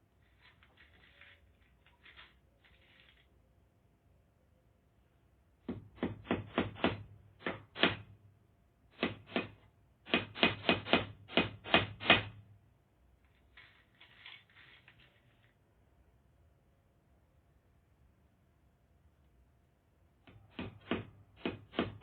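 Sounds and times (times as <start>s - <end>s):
hammer driving nails into wood: 5.6s - 8.2s, 8.9s - 12.4s, 20.3s - 22.0s.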